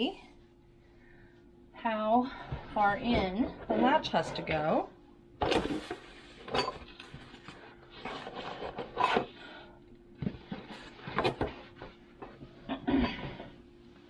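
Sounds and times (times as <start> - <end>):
faint steady hum: 0.0 - 14.0
wood and hardware scraping: 5.4 - 9.4, 10.2 - 11.6.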